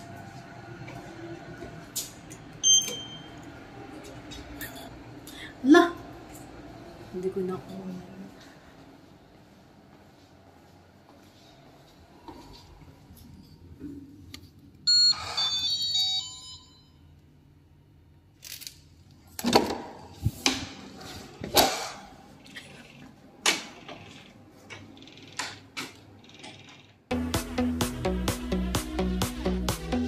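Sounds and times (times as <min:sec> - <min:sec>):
electronic chime: 0:14.9 - 0:17.0.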